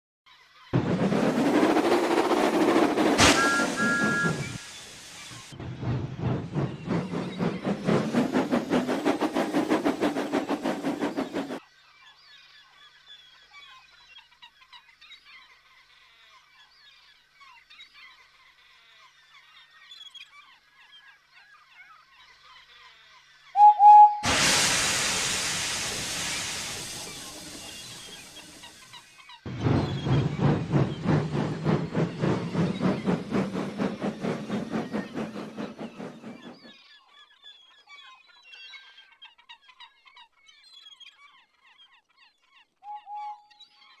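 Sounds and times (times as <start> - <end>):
loud steam hiss: 0.8 - 11.6, 23.6 - 36.5
steam locomotive whistle: 3.2 - 4.8, 23.6 - 28.6, 42.8 - 43.5
birds chirping: 29.5 - 36.7.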